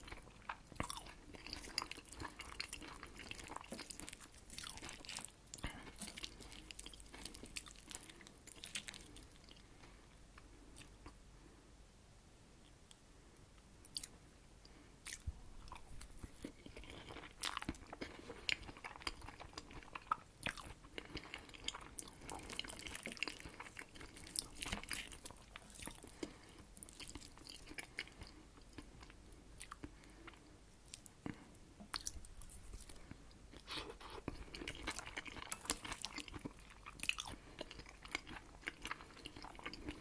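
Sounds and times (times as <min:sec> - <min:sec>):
close chewing: 0:00.0 - 0:09.8, 0:15.0 - 0:40.0.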